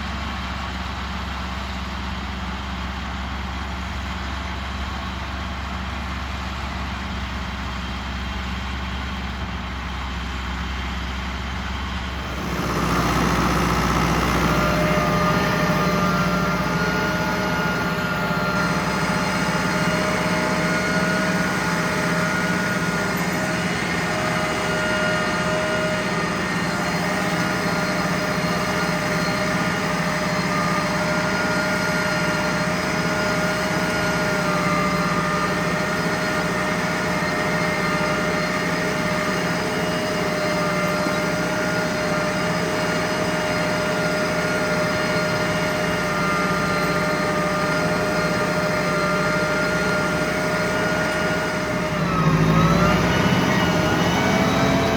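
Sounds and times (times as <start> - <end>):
tractor diesel engine running: 0.0 - 54.9
baler mechanical hum: 12.0 - 54.9
held machinery tones: 12.2 - 54.9.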